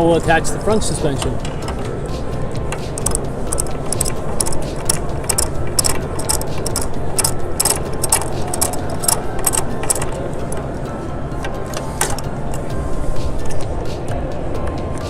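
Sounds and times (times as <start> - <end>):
sliding door hardware clicking: 2.7 - 10.7, 11.4 - 12.7.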